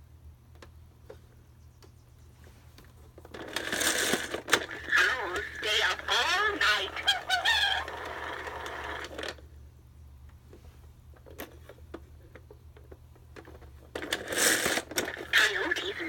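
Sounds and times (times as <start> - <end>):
talking toy scratchy animal sound: 4.6 - 9.1, 15.1 - 16.0.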